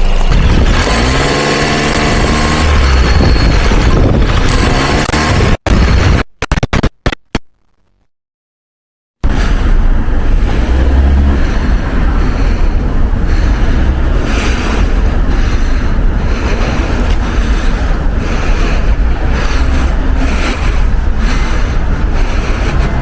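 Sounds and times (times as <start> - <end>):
car road and wind noise: 0.0 - 6.9, 9.2 - 23.0
low engine rumble: 9.2 - 23.0.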